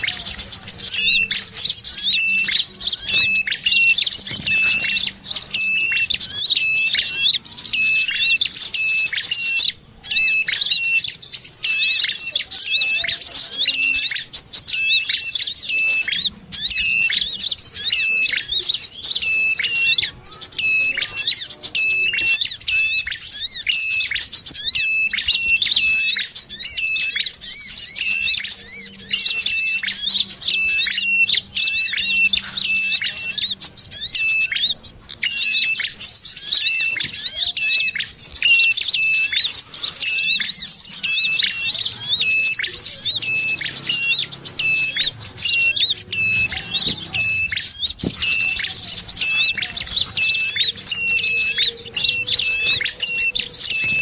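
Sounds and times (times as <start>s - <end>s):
high bird chirps: 0.0s - 54.0s
low repeating bird note: 38.4s - 54.0s.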